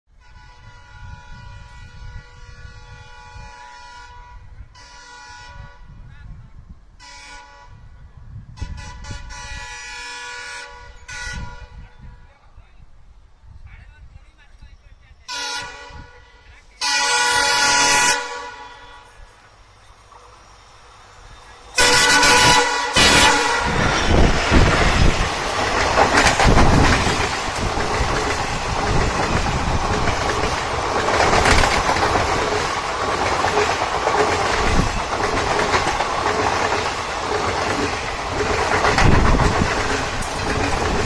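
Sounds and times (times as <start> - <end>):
locomotive horn blast: 0.2 - 6.0, 7.0 - 7.9, 8.6 - 11.9, 15.3 - 19.3, 21.8 - 25.1.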